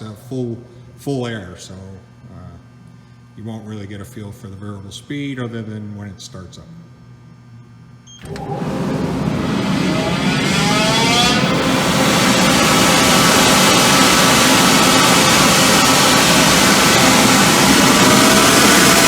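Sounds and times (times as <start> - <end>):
air compressor motor whine: 6.8 - 19.0.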